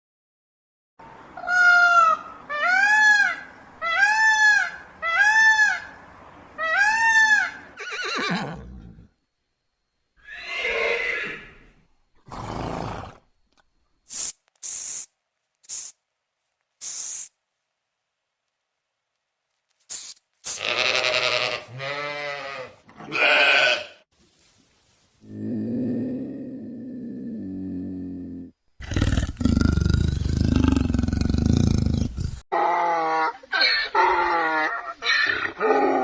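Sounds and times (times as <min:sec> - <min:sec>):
high hissing bursts: 0:14.0 - 0:16.1, 0:16.8 - 0:17.4, 0:19.8 - 0:20.7.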